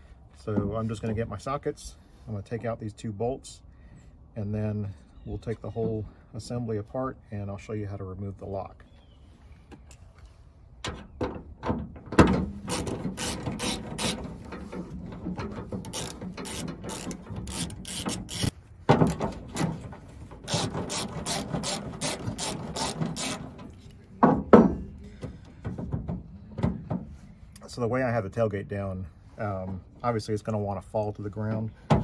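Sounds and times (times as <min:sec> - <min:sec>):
ratchet wrench clicking: 0:15.9 - 0:18.5.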